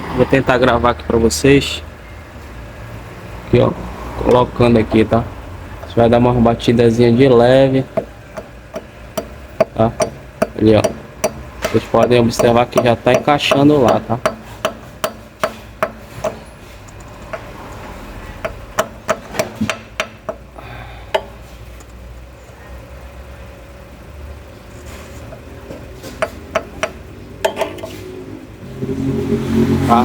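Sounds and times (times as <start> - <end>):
light hammer taps on metal: 21.1 - 21.4.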